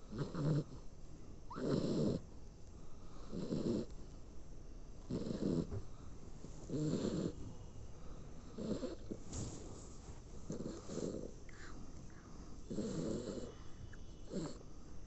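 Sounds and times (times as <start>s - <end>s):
dog snoring: 0.0s - 0.8s, 1.5s - 2.3s, 3.1s - 3.9s, 5.0s - 5.9s, 6.7s - 7.5s, 8.4s - 9.8s, 10.4s - 14.7s.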